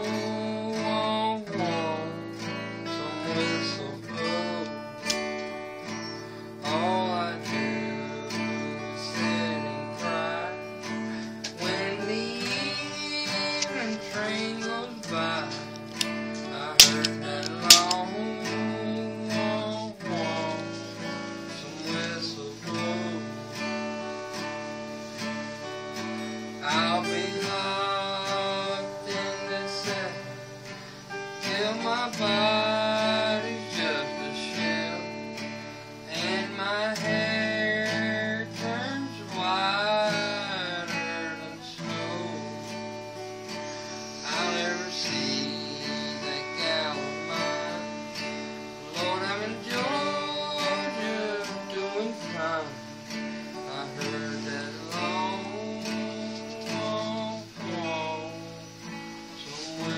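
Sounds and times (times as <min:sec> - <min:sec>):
bending lead guitar melody: 0:00.0 - 0:59.9
strummed acoustic guitar: 0:00.0 - 0:59.9.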